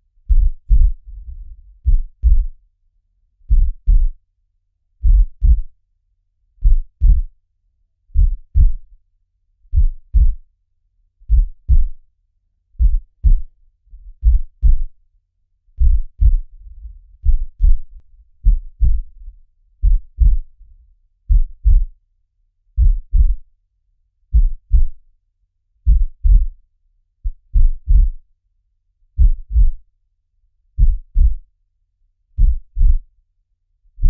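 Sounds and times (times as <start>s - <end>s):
heartbeat thumps: 0.3s - 2.6s, 3.5s - 4.2s, 5.0s - 5.7s, 6.6s - 7.3s, 8.2s - 8.9s, 9.7s - 10.4s, 11.3s - 12.0s, 12.8s - 15.0s, 15.8s - 20.7s, 21.3s - 22.0s, 22.8s - 23.4s, 24.3s - 25.0s, 25.9s - 26.6s, 27.3s - 28.2s, 29.2s - 29.8s, 30.8s - 31.4s, 32.4s - 33.0s.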